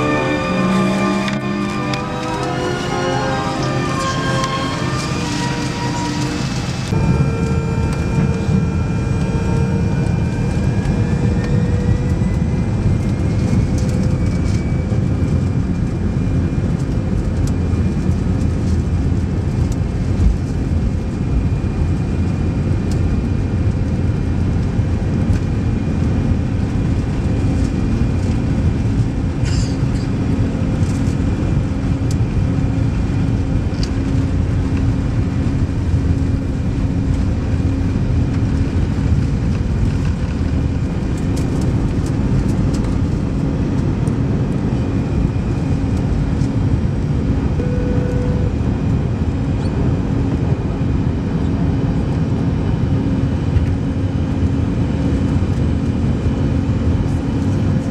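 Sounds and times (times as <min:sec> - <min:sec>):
jet engines rumbling and whining: 0:00.0 - 0:57.9.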